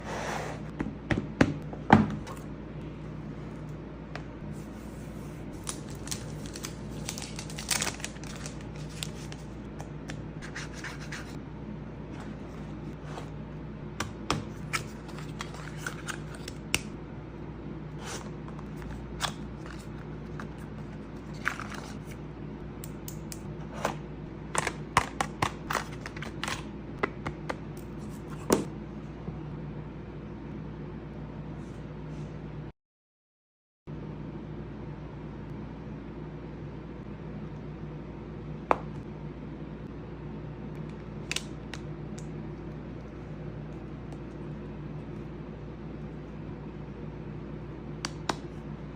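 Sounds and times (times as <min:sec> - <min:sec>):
steady low hum: 0:00.0 - 0:32.7, 0:33.9 - 0:48.9
cardboard and plastic packaging handled: 0:05.6 - 0:09.6.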